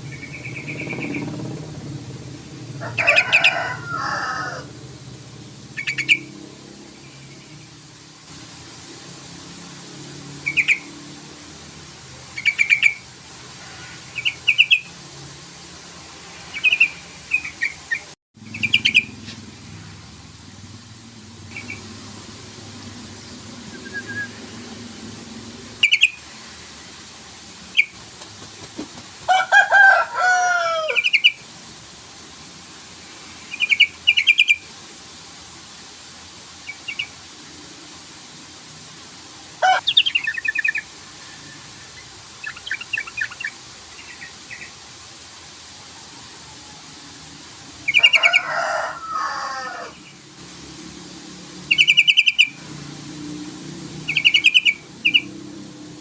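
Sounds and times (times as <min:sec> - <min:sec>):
bird rapid chattering notes: 0:00.0 - 0:01.4, 0:05.7 - 0:06.3, 0:16.6 - 0:19.3, 0:25.8 - 0:26.2, 0:51.7 - 0:52.6, 0:54.1 - 0:55.3.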